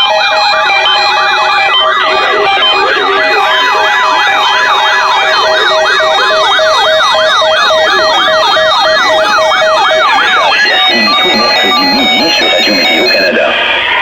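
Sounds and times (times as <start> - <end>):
electronic siren yelping: 0.0 - 14.0
low tone beeping: 8.8 - 13.5.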